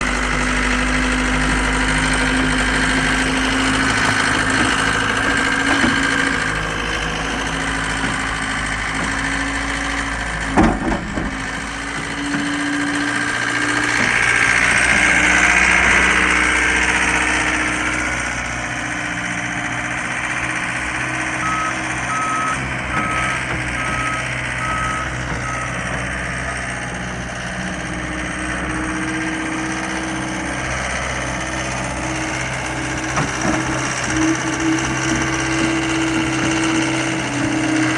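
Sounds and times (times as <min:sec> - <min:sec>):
diesel engine running: 0:00.0 - 0:37.9
backup alarm beeps: 0:21.4 - 0:25.8.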